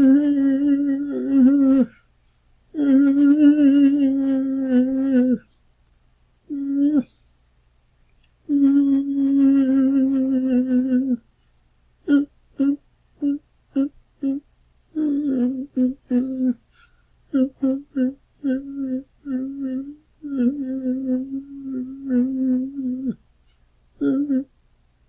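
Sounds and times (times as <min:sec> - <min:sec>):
man whimpering: 0:00.0 - 0:02.0, 0:02.8 - 0:05.4, 0:06.5 - 0:07.2, 0:15.0 - 0:16.6, 0:17.3 - 0:23.2, 0:24.0 - 0:24.5.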